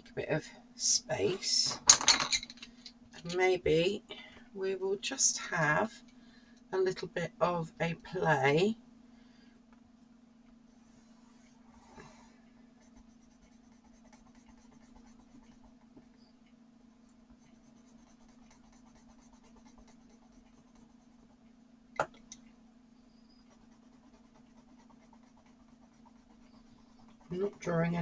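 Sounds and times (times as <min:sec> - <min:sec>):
steady low hum: 0:00.0 - 0:28.0
pencil scratching on paper: 0:12.8 - 0:15.8, 0:17.4 - 0:21.4, 0:23.3 - 0:28.0.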